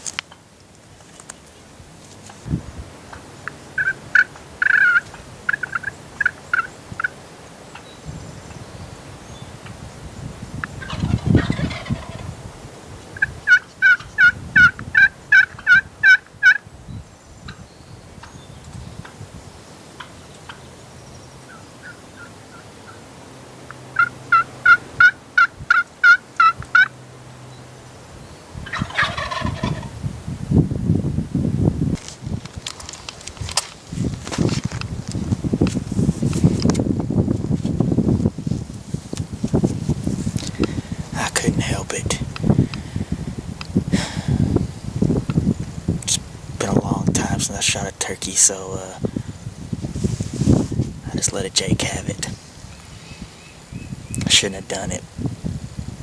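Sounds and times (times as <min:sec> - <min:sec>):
turkey gobbling: 0:03.7 - 0:07.9, 0:10.8 - 0:12.4, 0:13.2 - 0:16.6, 0:21.5 - 0:23.1, 0:23.7 - 0:26.9, 0:28.6 - 0:30.0.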